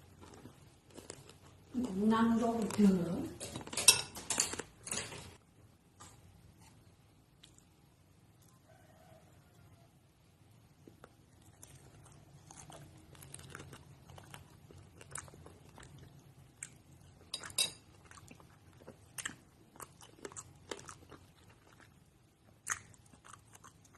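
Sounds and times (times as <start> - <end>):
crunching and chewing candy: 0.0 - 4.8, 10.8 - 23.9.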